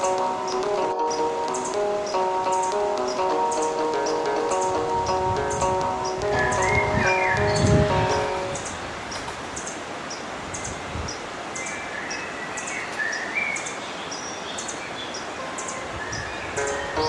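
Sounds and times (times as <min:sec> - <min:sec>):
river flowing: 0:00.0 - 0:17.0
bird chirps: 0:05.5 - 0:17.0.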